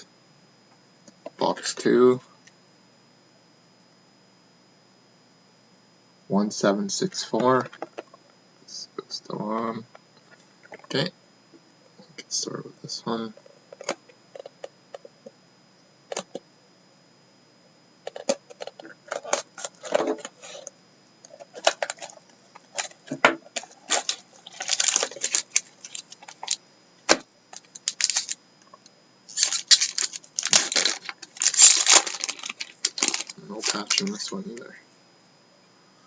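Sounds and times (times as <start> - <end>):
card box packaging rustling: 18.1 - 20.7, 21.3 - 28.4, 29.3 - 34.4.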